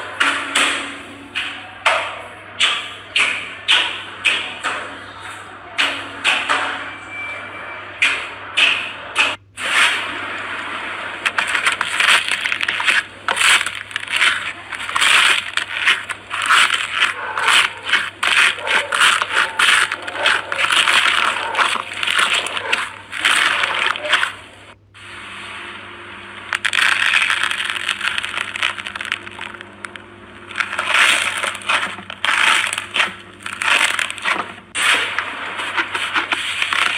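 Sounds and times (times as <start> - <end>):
slime squeezed by hand crackling: 26.5 - 36.9.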